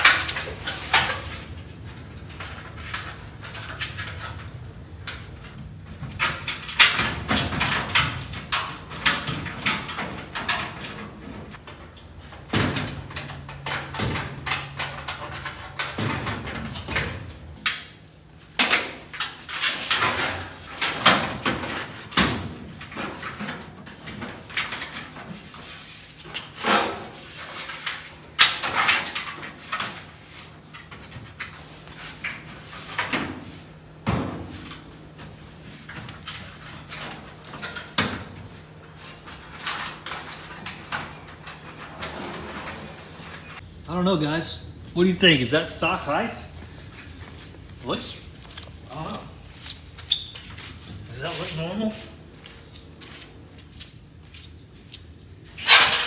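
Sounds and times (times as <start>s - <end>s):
metal panels clanking and rattling: 0.0s - 25.7s, 26.3s - 43.6s, 55.6s - 56.0s.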